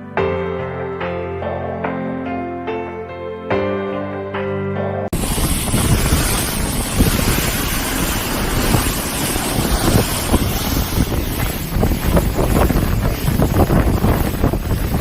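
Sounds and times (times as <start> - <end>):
rush of water: 5.1 - 15.0
wind buffeting microphone: 5.1 - 15.0.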